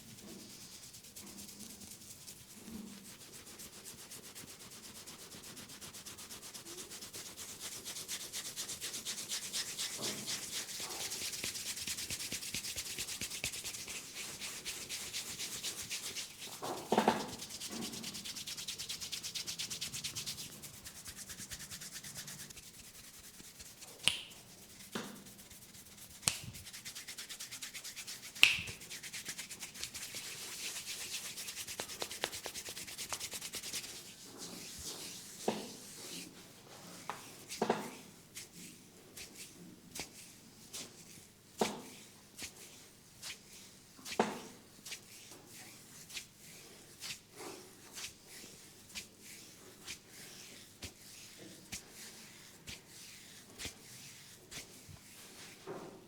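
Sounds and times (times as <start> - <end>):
fingers rubbing scalp and hair: 0.2 - 36.4.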